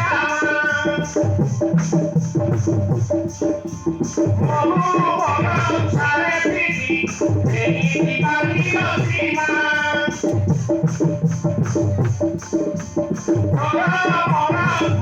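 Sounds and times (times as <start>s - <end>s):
person singing: 0.0s - 1.4s, 4.4s - 10.4s, 13.5s - 15.0s
drums and shaker beat: 0.0s - 15.0s.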